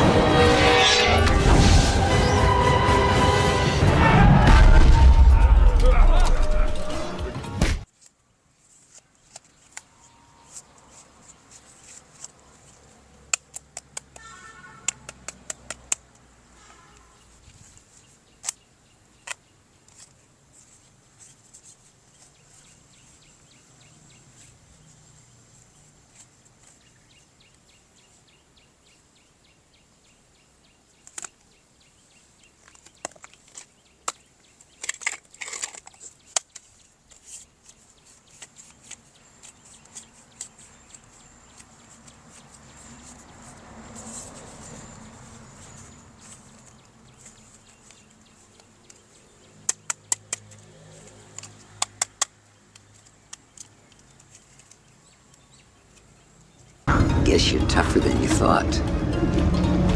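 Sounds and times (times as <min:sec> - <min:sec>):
faint handling noise: 0:07.8 - 0:16.3, 0:16.9 - 0:27.7, 0:32.2 - 0:56.7
plastic toy parts clicking: 0:11.8 - 0:16.2, 0:19.2 - 0:20.2, 0:31.0 - 0:31.5, 0:32.6 - 0:42.2, 0:46.4 - 0:56.1.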